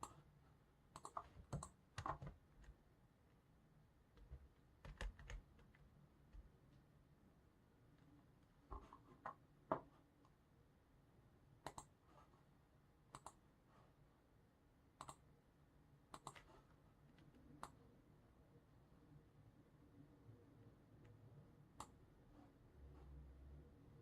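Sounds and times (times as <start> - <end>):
mouse and keyboard clicking: 1.0 - 2.4, 11.6 - 12.0, 13.1 - 13.4, 15.0 - 15.2, 16.1 - 16.5.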